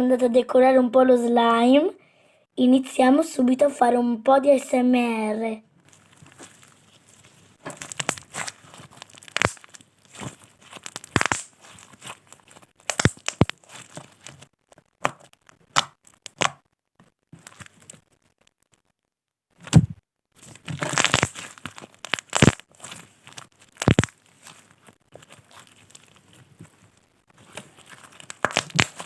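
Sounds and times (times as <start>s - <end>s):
slime squishing with sticky pops: 5.8s - 18.8s, 19.6s - 29.0s.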